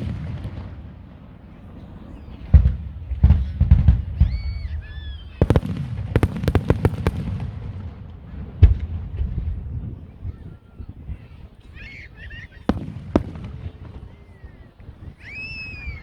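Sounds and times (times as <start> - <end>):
fireworks exploding: 0.0 - 16.0
firework whistling: 2.2 - 7.4, 11.7 - 16.0.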